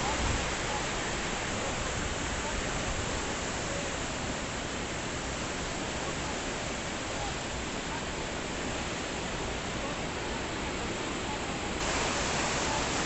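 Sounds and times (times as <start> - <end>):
river rushing: 0.0 - 13.0.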